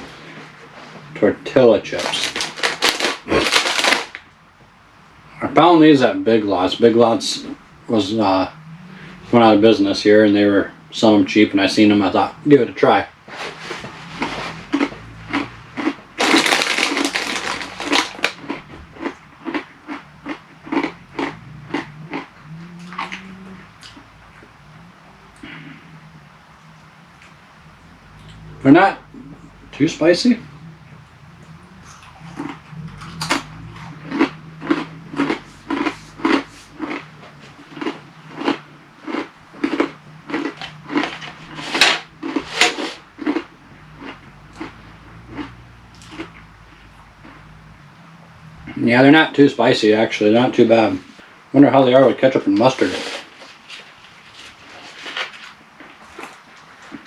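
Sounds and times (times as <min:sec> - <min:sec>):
tortilla chips being chewed: 0:01.8 - 0:04.7, 0:12.0 - 0:48.8, 0:52.6 - 0:57.0.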